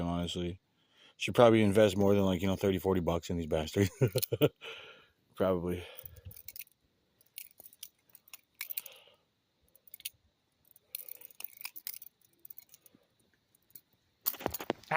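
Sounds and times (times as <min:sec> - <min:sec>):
butterfly knife clicking and clacking: 0:09.8 - 0:12.9.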